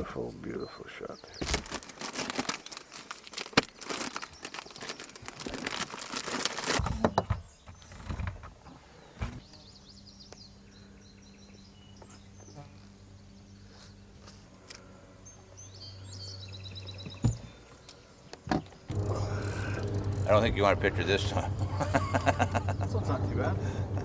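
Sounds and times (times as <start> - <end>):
small birds chirping: 0.0 - 24.0
close crinkling and rustling: 1.4 - 8.6
faint low hum: 18.9 - 24.0.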